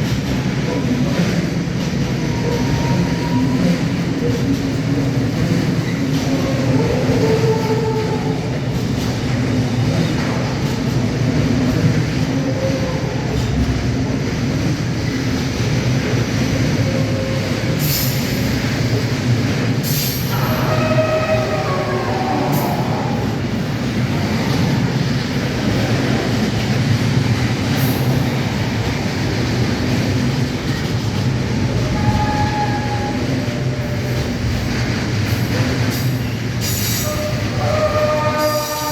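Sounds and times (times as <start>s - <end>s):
freight train rumbling on rails: 0.0s - 38.9s
train wheels squealing: 2.2s - 4.5s, 35.5s - 38.9s.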